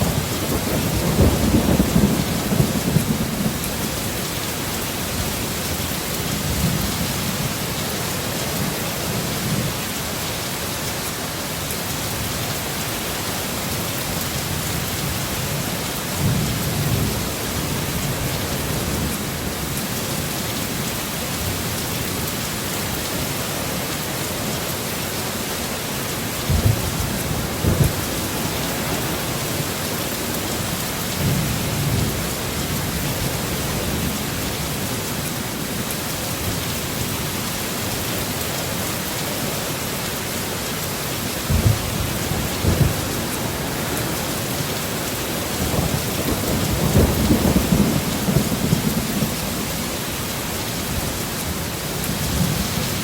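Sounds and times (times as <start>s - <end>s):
thunder rumbling: 0.0s - 5.8s, 26.4s - 34.8s, 41.2s - 53.0s
heavy rain pouring: 0.0s - 53.0s.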